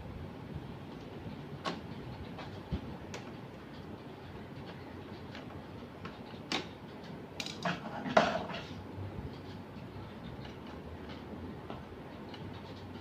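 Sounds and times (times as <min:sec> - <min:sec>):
tools and parts clinking: 0:07.4 - 0:08.7.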